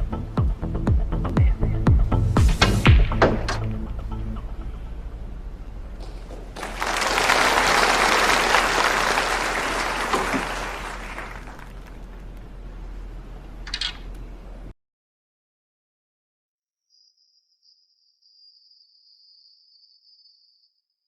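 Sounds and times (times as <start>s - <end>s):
audience applauding: 6.0s - 12.5s.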